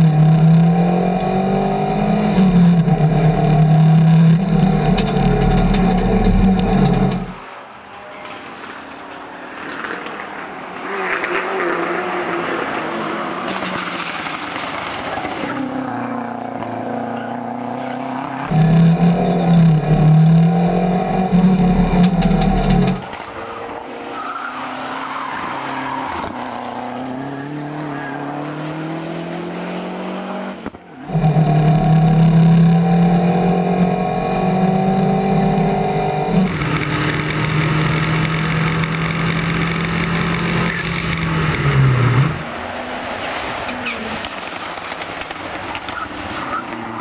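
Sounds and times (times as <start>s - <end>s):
rally car engine revving hard: 0.0s - 7.4s, 16.0s - 23.1s, 26.8s - 42.5s.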